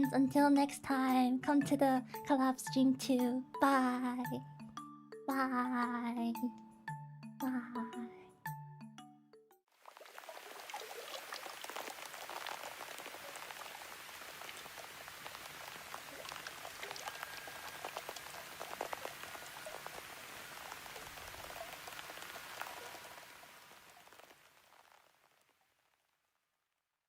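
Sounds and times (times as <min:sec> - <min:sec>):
rain-like pattering: 0:09.7 - 0:26.2.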